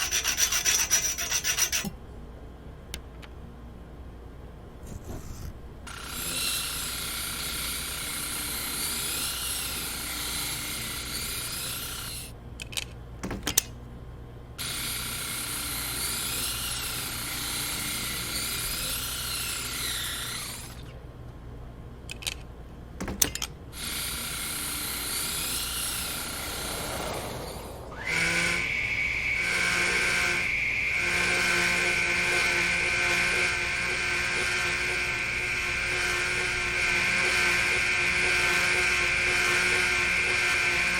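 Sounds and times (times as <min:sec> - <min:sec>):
motor running with high whine: 0:04.9 - 0:12.3, 0:14.6 - 0:20.9, 0:23.8 - 0:40.9
wavering power tool: 0:04.9 - 0:12.3, 0:14.6 - 0:20.9, 0:23.7 - 0:40.9.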